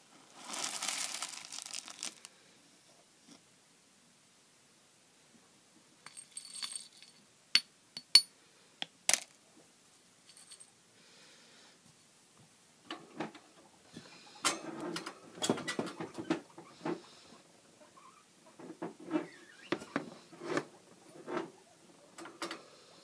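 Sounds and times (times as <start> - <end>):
jingle of small objects: 6.0 - 7.2, 10.3 - 10.7.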